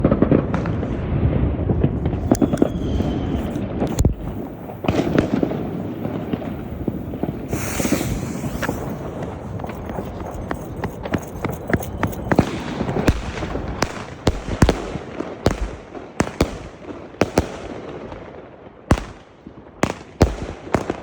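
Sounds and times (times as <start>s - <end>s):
fireworks cracks and bangs: 0.0s - 9.3s
fireworks hissing burst: 2.0s - 10.9s.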